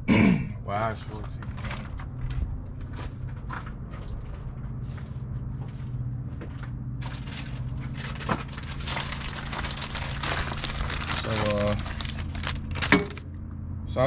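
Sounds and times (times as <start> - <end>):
steady low hum: 0.0 - 14.0
metal hardware rustling and clinking: 7.0 - 13.2.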